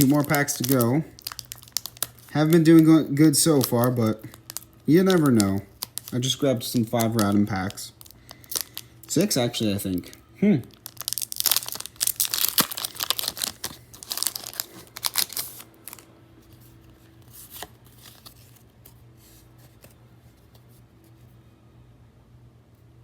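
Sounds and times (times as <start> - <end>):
wrapper tearing and crinkling: 0.0 - 16.1.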